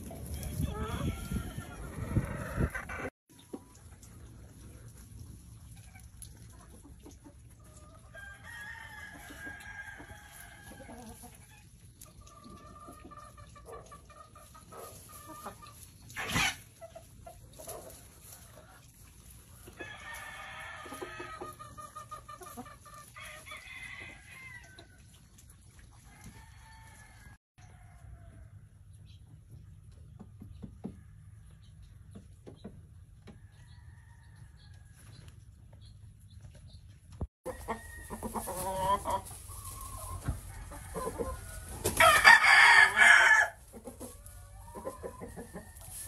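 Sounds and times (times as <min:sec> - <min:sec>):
roosters crowing: 0:00.2 - 0:03.1, 0:08.2 - 0:10.9, 0:37.5 - 0:46.0.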